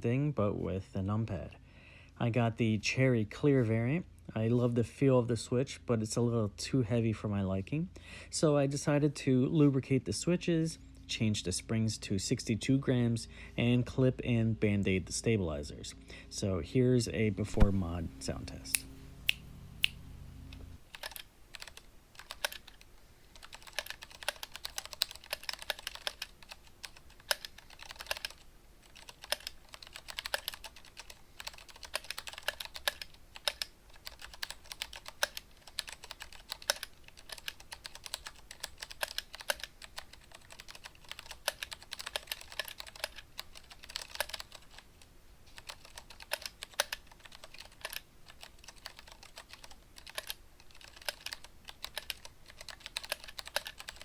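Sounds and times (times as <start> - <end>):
mechanical keyboard typing: 20.9 - 44.9, 45.5 - 54.0.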